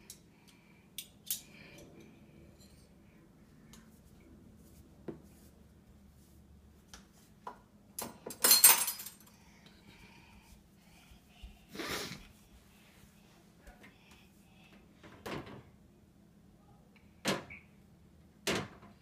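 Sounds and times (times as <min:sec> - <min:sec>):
dishes and cutlery clinking: 0:08.0 - 0:09.3.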